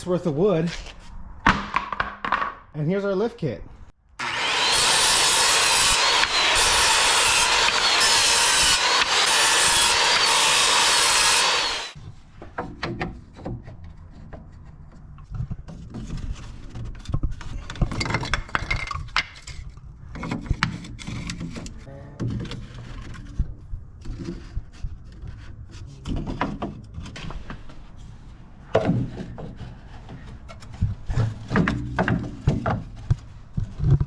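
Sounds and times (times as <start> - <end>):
saw cutting through plywood: 4.2 - 12.0
wood knocking and clattering: 28.7 - 34.0.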